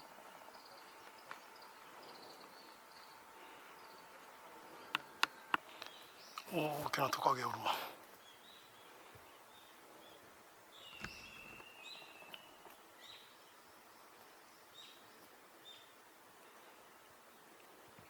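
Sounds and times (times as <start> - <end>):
faint bird chirps: 0.0 - 17.6.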